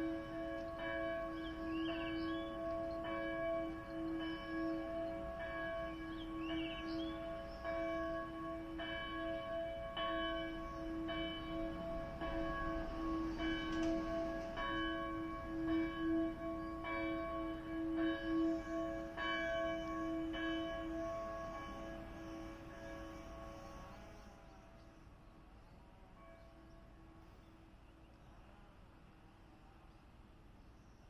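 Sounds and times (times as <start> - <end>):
church bell ringing: 0.0 - 24.4.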